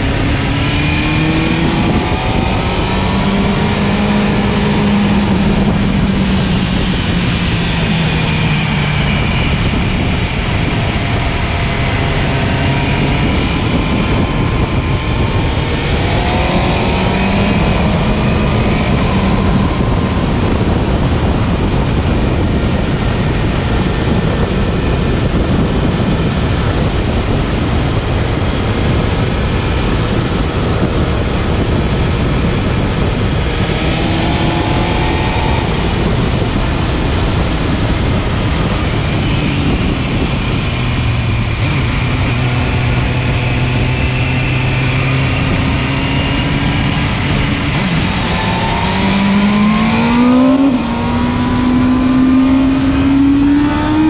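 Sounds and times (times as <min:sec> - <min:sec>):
heavy wind rush: 0:00.0 - 0:54.0
motorcycle engine at speed: 0:00.0 - 0:54.0.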